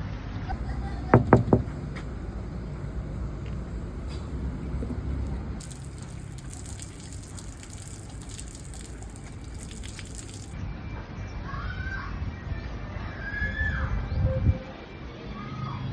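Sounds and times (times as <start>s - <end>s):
water gushing: 5.6s - 10.6s.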